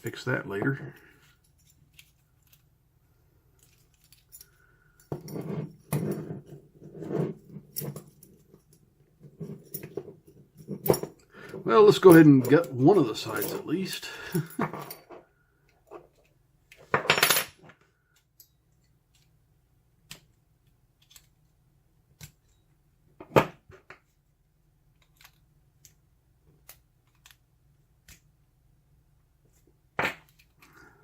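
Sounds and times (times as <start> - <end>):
metal clicks of lock and tools: 24.9 - 26.0.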